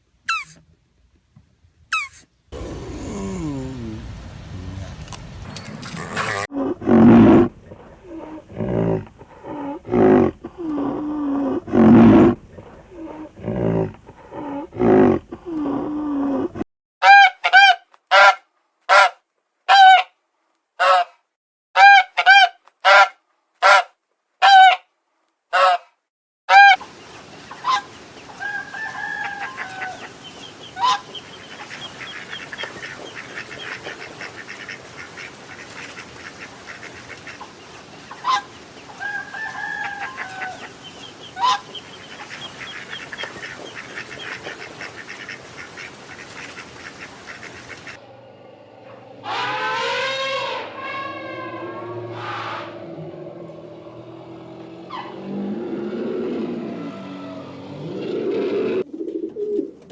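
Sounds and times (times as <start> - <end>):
outdoor background: 0.0 - 59.9
low repeated animal calls: 2.0 - 4.1, 6.0 - 16.6, 27.6 - 58.9.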